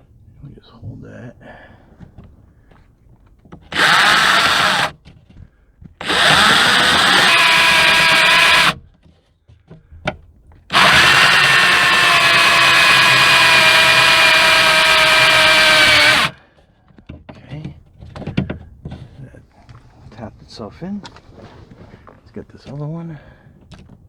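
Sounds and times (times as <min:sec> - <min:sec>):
cordless drill driving screw: 0:03.7 - 0:05.0, 0:06.0 - 0:08.8, 0:10.7 - 0:16.4.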